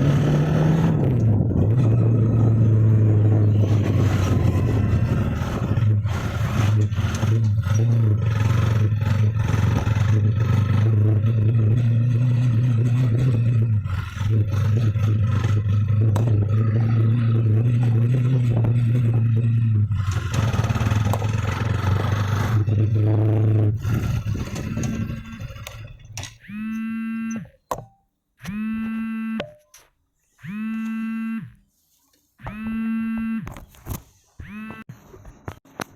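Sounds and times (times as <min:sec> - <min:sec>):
vehicle engine running: 0:00.0 - 0:27.4, 0:30.4 - 0:31.6, 0:32.5 - 0:33.6
electronic tones: 0:26.4 - 0:27.6, 0:28.4 - 0:29.6, 0:30.4 - 0:31.6, 0:32.4 - 0:33.6, 0:34.4 - 0:34.9.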